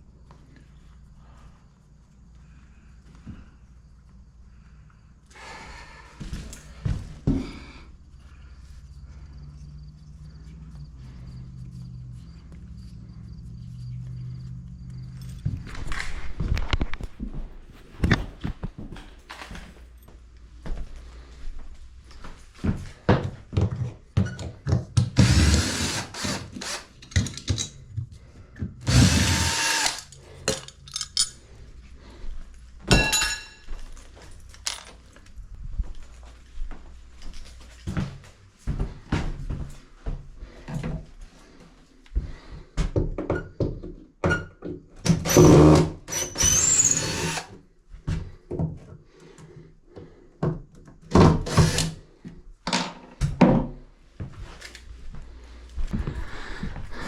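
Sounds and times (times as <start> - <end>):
power drill running: 25.2 - 27.0, 28.8 - 30.2, 45.2 - 47.6, 51.4 - 52.0
handling knocks and clicks: 27.0 - 28.8, 33.9 - 35.3.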